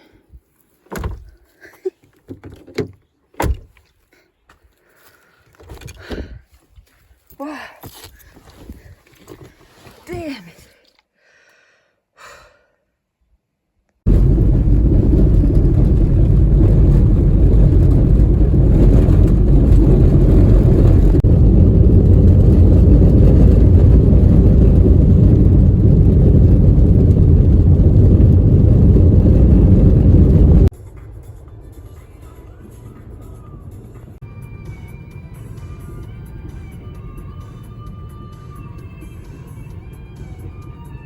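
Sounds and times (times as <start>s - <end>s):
road and wind noise: 2.3s - 3.8s, 14.1s - 41.0s
car rumble on the move: 14.1s - 30.7s, 33.0s - 41.0s.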